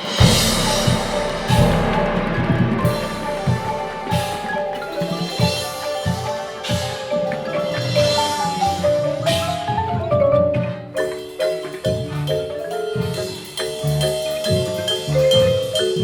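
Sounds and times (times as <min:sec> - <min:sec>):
cymbal crash: 0:00.0 - 0:08.8
marching band playing: 0:00.0 - 0:10.0.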